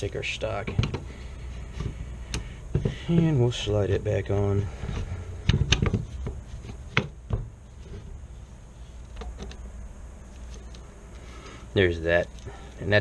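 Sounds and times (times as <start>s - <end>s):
wooden stock knocks and clicks: 4.9s - 7.5s.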